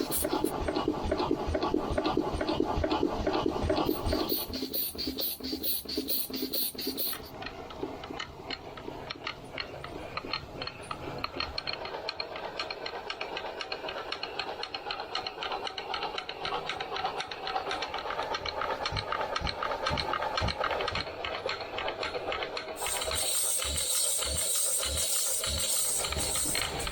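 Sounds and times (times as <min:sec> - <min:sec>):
steam hissing: 0:00.0 - 0:00.5, 0:22.8 - 0:26.9
steam engine clatter: 0:00.0 - 0:26.9.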